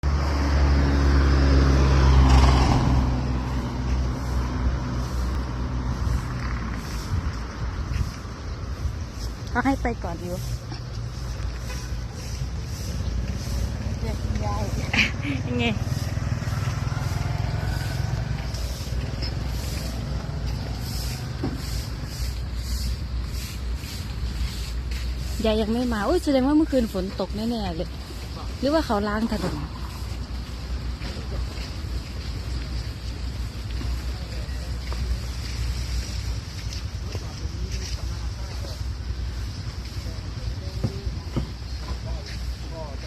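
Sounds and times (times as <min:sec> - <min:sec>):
vehicle engine humming: 0:00.0 - 0:43.0.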